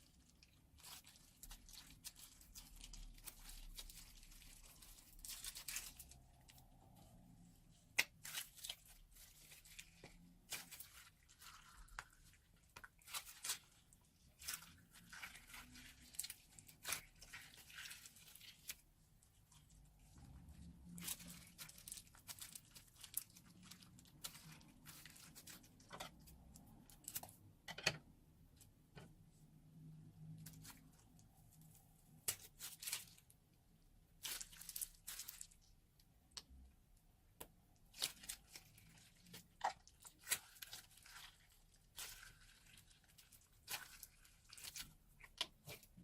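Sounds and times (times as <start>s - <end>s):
slime crackling and popping: 37.3s - 46.0s.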